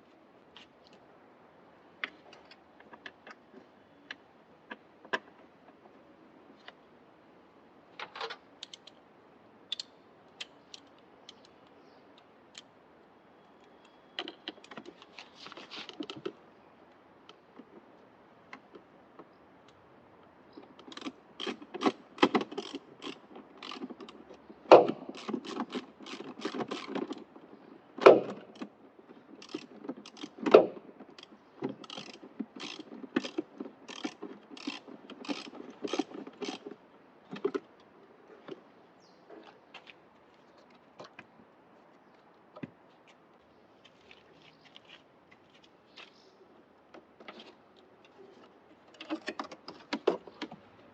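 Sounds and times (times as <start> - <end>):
hand tools ratchet clicking: 20.8 - 24.2, 24.8 - 27.3, 29.4 - 36.7.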